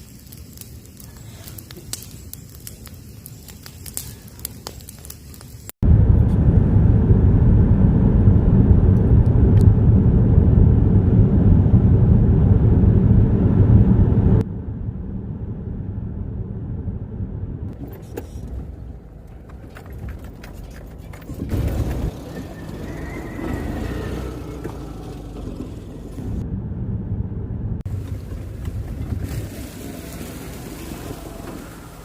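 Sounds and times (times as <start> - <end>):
car road rumble: 5.8 - 32.0.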